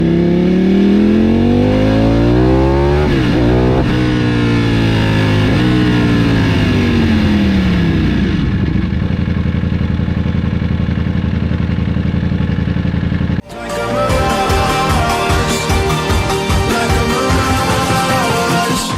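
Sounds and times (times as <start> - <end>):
motorcycle engine revving and idling: 0.0 - 13.4
music: 13.4 - 18.9.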